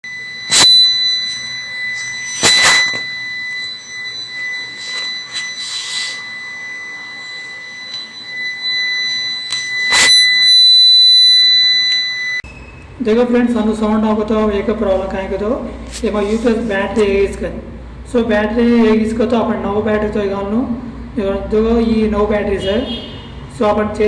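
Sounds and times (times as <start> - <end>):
high-pitched alarm beep: 0.0 - 13.1.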